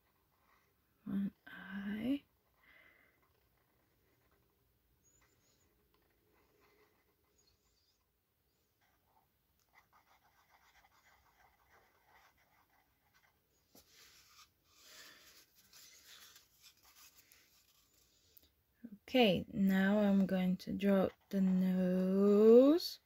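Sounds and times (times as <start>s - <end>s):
marker scratching on paper: 9.6s - 18.4s.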